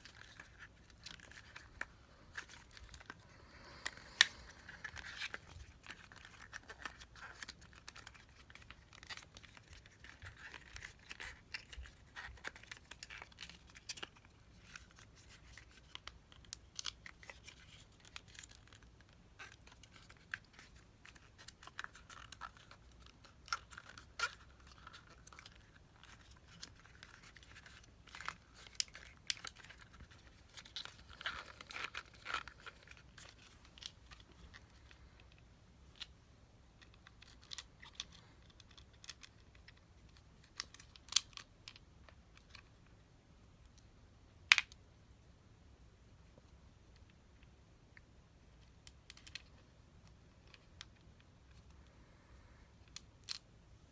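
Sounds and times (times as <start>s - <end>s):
crinkling rustling handling: 0.0s - 36.1s.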